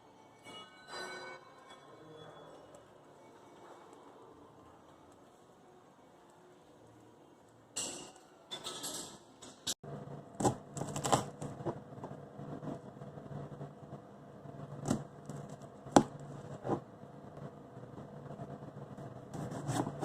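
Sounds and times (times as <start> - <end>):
low steady hum: 9.9 - 20.0.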